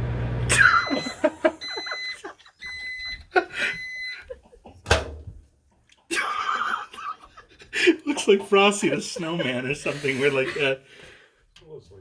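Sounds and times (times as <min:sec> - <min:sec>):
microwave oven humming: 0:00.0 - 0:02.3
microwave end-of-cycle beeps: 0:00.0 - 0:04.3.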